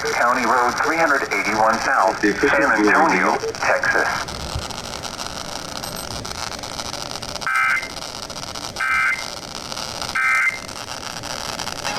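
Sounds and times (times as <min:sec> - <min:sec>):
two-tone digital data bursts: 0:00.0 - 0:08.1, 0:08.8 - 0:09.4, 0:10.1 - 0:10.7
radio static hiss: 0:00.0 - 0:11.9.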